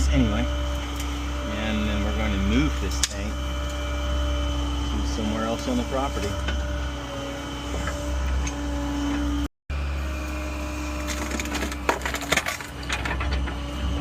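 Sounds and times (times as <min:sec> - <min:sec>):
excavator engine running: 0:00.0 - 0:14.0
steady whine: 0:00.0 - 0:14.0
wood and brush cracking: 0:10.9 - 0:13.5.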